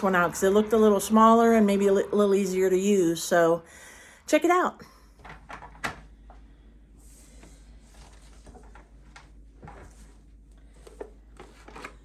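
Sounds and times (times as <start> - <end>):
low steady hum: 0.0 - 12.0
soft taps and rustles: 7.4 - 12.0.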